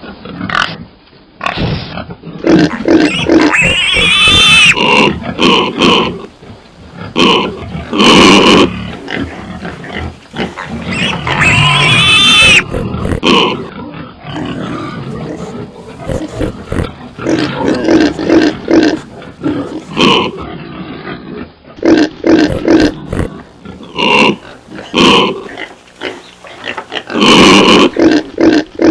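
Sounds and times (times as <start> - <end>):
pigs grunting: 0.0 - 28.9
pig squealing: 1.4 - 28.9.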